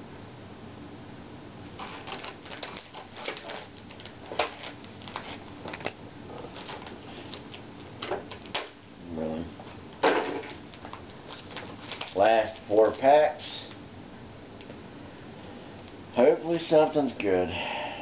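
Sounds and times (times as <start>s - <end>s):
card packaging crinkling: 1.8s - 8.8s, 10.3s - 13.1s.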